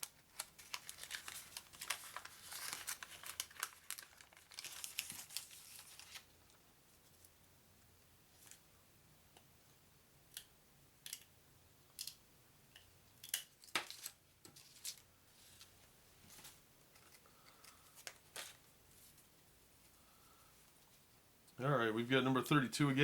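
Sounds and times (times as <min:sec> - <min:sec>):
wax paper crinkling and rustling: 0:00.0 - 0:06.6, 0:13.6 - 0:19.3.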